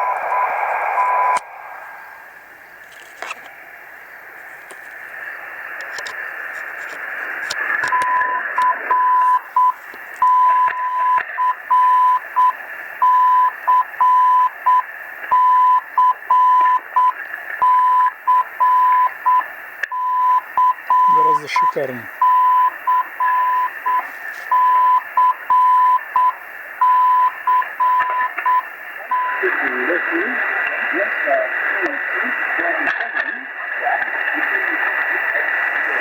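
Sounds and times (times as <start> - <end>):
radio static hiss: 0.0 - 36.0
morse code beeping tone: 7.9 - 14.8, 20.0 - 29.6.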